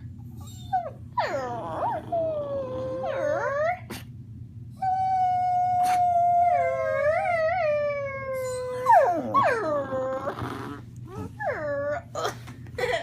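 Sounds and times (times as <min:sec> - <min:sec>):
dogs howling: 0:01.2 - 0:03.9, 0:05.0 - 0:12.0.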